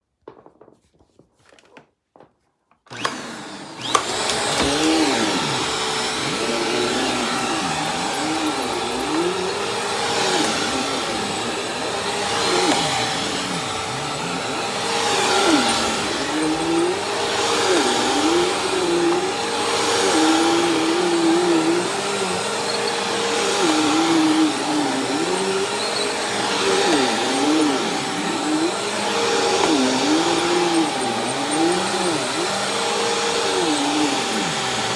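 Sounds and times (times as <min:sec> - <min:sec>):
vacuum cleaner running on carpet: 0:02.9 - 0:34.9.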